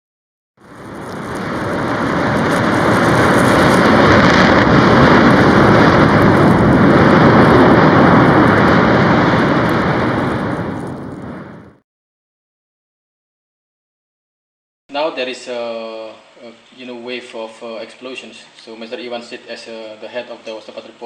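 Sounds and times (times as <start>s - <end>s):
roar of volcanic ash venting: 0.6s - 11.8s.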